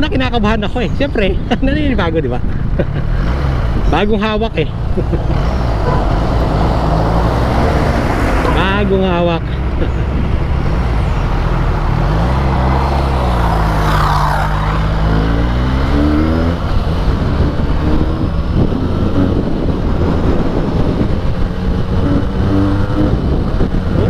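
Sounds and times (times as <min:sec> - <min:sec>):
rushing road noise: 0:00.0 - 0:24.0.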